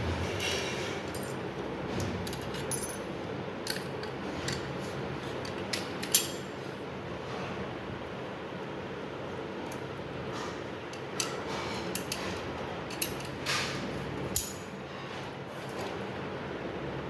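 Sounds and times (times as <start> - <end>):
metallic clicks of lock parts: 2.2 - 4.7, 5.4 - 6.5, 10.9 - 13.6, 14.3 - 14.7.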